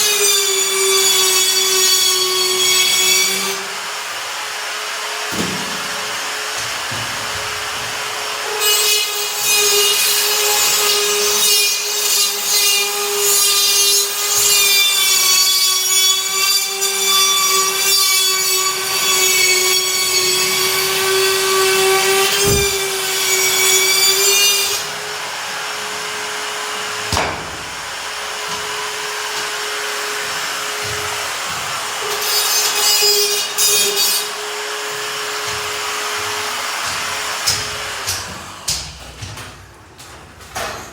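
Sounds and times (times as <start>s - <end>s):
tool cutting gypsum board: 17.7s - 25.0s.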